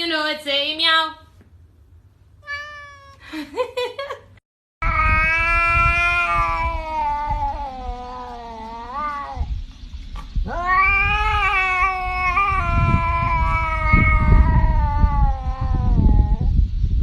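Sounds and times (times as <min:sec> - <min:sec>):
cat yowling: 0:02.4 - 0:03.2, 0:04.8 - 0:09.5, 0:10.4 - 0:16.5.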